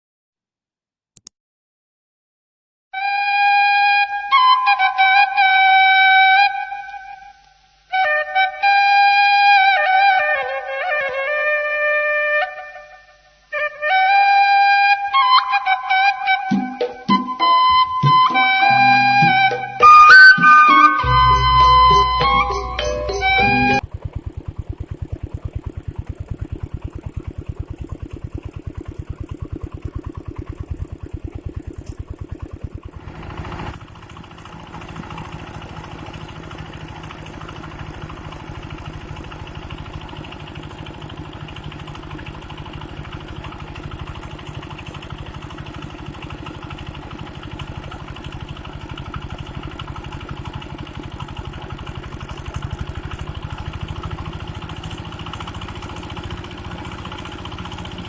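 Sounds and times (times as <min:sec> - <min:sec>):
water pump engine thudding: 0:19.2 - 0:58.0.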